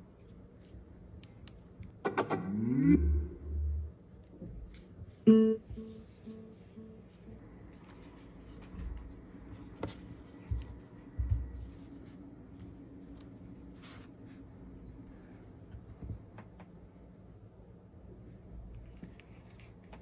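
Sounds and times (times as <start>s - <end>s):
plucked guitar-like chime: 5.3s - 5.7s.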